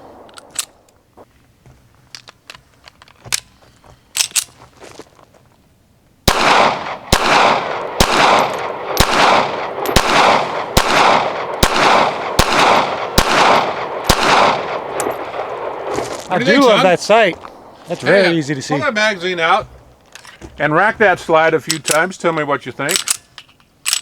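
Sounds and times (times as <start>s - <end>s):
pistol shots with short echo: 6.3s - 15.9s.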